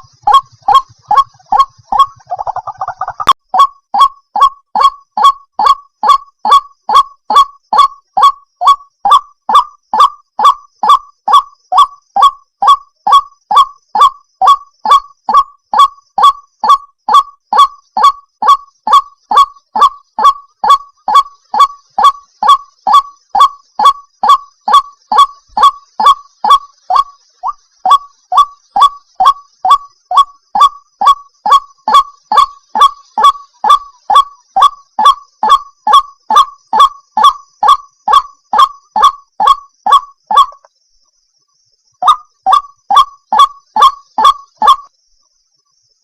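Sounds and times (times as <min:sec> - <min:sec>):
bird calling: 0:00.0 - 0:40.7, 0:42.0 - 0:44.9.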